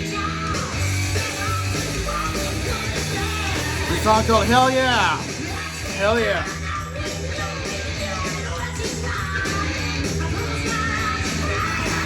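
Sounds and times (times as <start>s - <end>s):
rock song from vinyl record: 0.0s - 12.0s.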